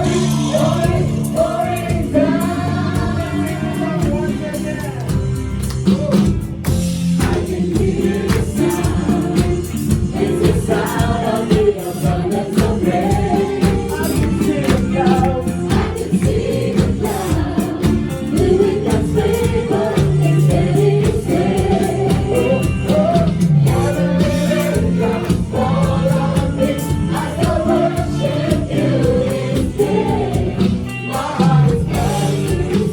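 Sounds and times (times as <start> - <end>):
band with steady beat: 0.0 - 32.9
choir singing gospel: 0.0 - 32.9.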